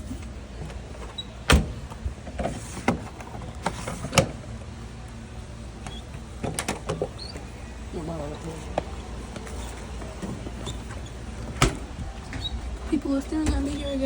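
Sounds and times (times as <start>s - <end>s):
steady low hum: 0.0s - 14.0s
washing machine clunks and knocks: 1.4s - 3.0s, 11.5s - 12.5s.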